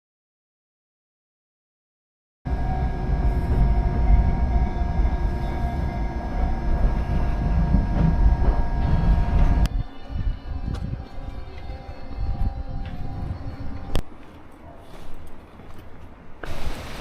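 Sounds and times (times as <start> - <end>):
train motor whine: 2.5 - 9.7
train rumble: 2.5 - 14.5.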